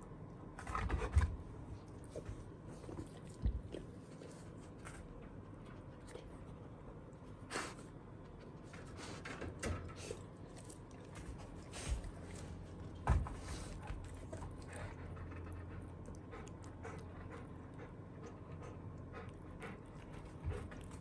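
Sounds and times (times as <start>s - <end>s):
dog panting: 7.4s - 21.0s
knocks and rustles: 11.1s - 14.4s.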